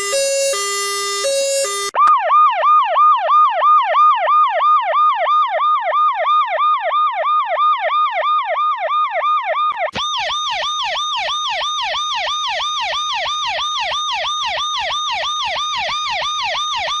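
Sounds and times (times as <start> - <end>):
emergency siren yelping: 0.0 - 2.1
harsh siren with low pulse: 0.0 - 17.0.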